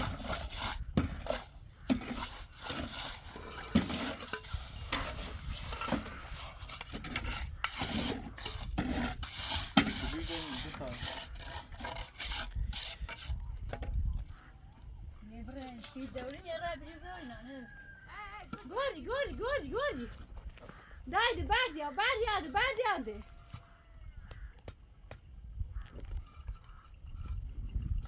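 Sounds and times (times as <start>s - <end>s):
rasping and scraping on wood: 0.0s - 13.4s.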